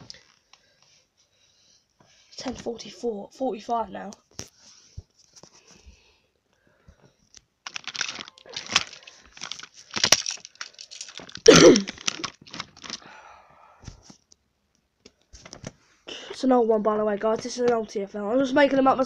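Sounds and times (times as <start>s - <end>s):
toy trains clicking and clattering: 7.7s - 13.0s.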